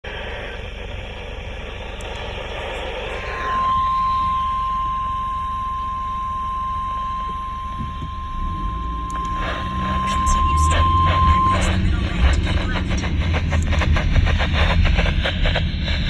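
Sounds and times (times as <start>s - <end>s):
radio receiver hiss: 0.0s - 16.0s
single-pitch alarm tone: 2.9s - 13.2s.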